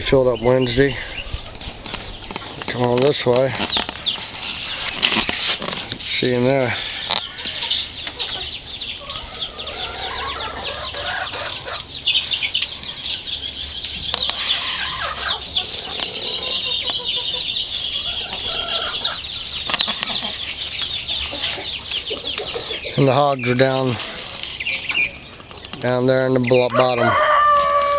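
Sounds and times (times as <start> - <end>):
chickens clucking: 0.0 - 27.9
small birds chirping: 0.0 - 27.9.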